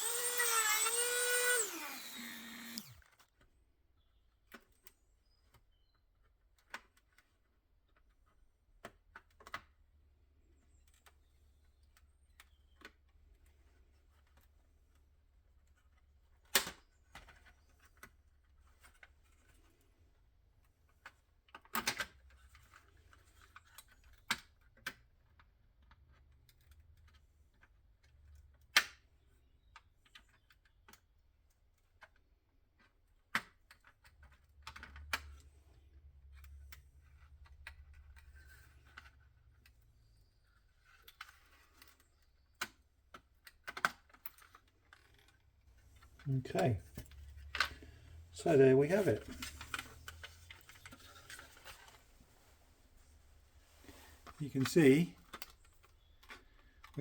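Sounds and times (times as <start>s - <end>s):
faint scraping or rustling: 49.0s - 54.4s.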